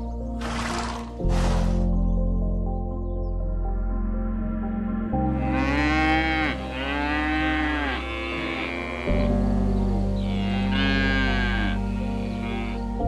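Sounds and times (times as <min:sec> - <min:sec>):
background music: 0:00.0 - 0:13.0
animal drawn-out calls: 0:05.6 - 0:13.0.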